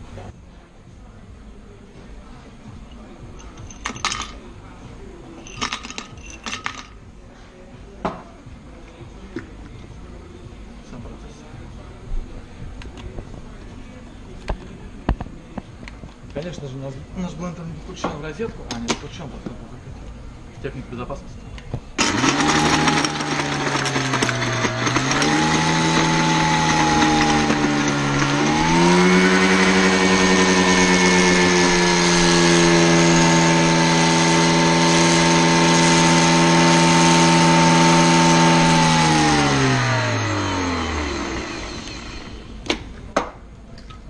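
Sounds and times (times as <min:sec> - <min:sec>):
electric blender running: 0:22.0 - 0:42.5.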